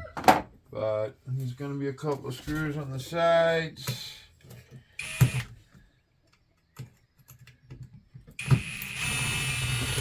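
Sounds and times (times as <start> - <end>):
power drill whining: 5.0 - 5.6, 8.4 - 10.0.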